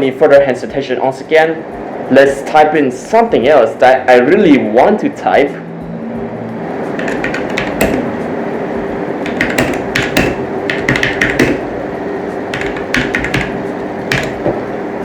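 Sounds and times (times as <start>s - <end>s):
steady background hum: 0.0s - 15.0s
mechanical keyboard typing: 7.0s - 8.1s, 9.2s - 11.7s, 12.5s - 14.4s.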